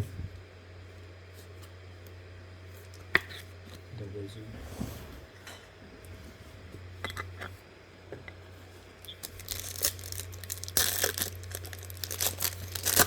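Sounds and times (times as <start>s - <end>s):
card pack wrapper crinkling and tearing: 9.0s - 13.0s.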